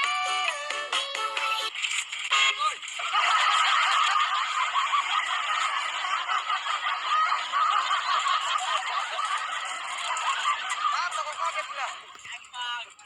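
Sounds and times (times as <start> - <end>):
laughter: 2.8 - 12.3.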